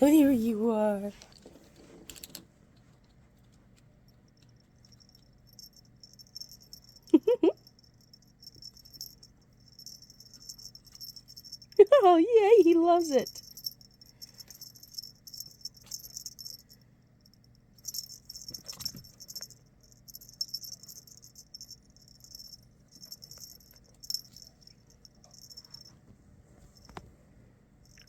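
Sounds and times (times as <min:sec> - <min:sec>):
cat toy jingling and rattling: 0:04.1 - 0:25.9.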